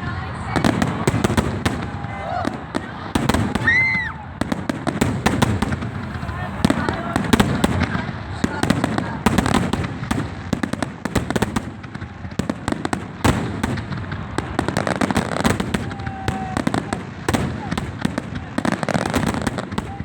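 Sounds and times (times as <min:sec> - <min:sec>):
fireworks popping and banging: 0:00.0 - 0:20.0
steady background rumble: 0:05.2 - 0:08.2.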